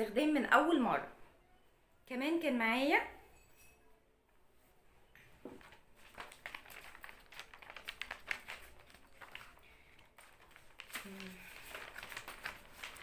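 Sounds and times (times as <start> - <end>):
packaging taps and crinkles: 5.5 - 13.0.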